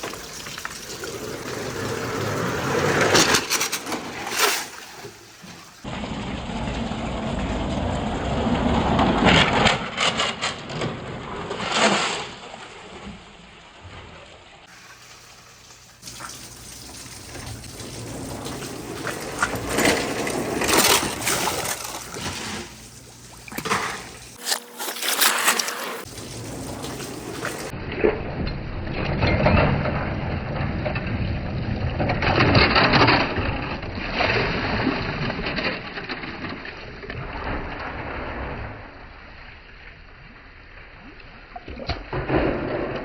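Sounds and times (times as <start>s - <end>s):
water trickling down wooden track: 0.0s - 24.2s, 26.0s - 27.8s.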